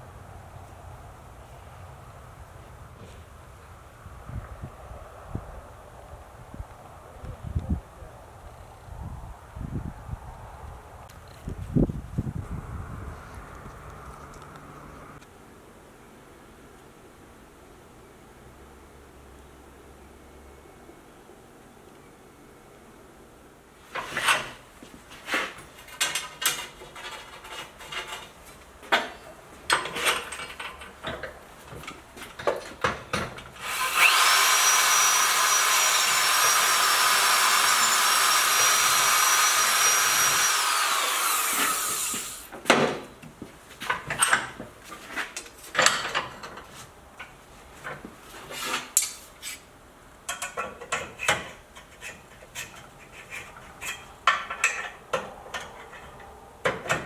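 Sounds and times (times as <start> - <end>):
power tool whining: 33.5 - 42.5.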